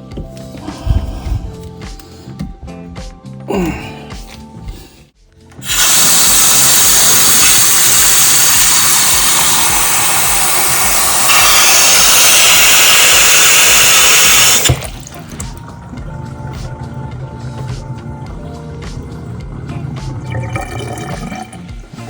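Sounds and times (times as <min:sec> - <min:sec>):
tap running into basin: 0:05.6 - 0:22.0.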